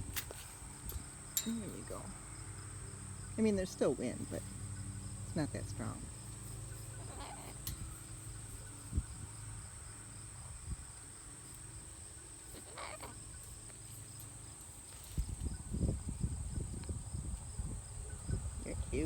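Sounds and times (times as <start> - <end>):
insect chorus: 0.0 - 19.0
wind rumble: 7.0 - 12.1, 15.0 - 19.0.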